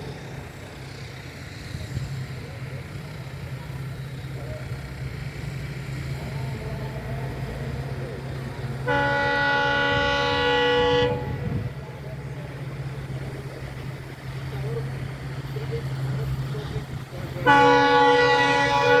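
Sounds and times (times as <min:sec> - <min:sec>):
locomotive engine humming: 0:00.0 - 0:19.0
locomotive horn blast: 0:08.6 - 0:11.8, 0:17.2 - 0:19.0.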